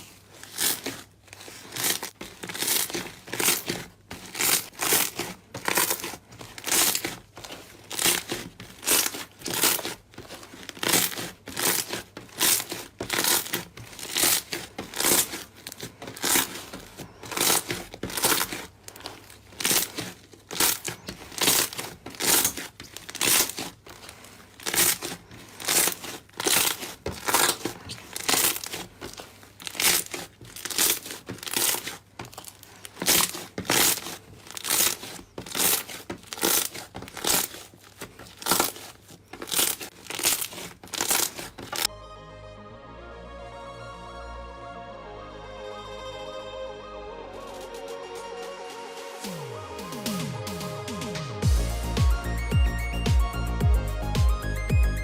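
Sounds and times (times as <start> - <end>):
slime squishing by hand: 0.0 - 41.9.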